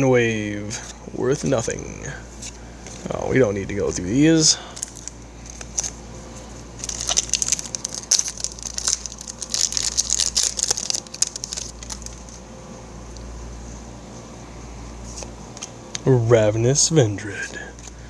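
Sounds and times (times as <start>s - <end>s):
foil wrapper crinkling: 2.9s - 12.5s
cards being handled: 4.7s - 12.5s.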